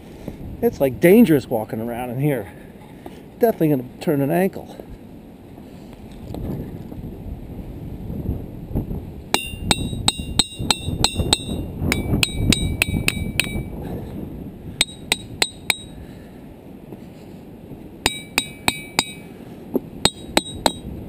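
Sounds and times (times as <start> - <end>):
hammer striking ringing rocks: 9.3 - 13.8, 14.8 - 16.0, 18.0 - 19.3, 20.0 - 20.9.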